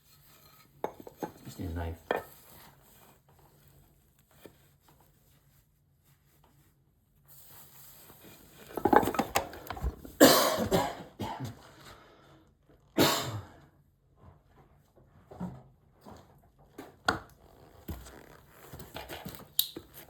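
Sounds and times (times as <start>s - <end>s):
person coughing: 10.2s - 11.6s, 13.0s - 13.5s.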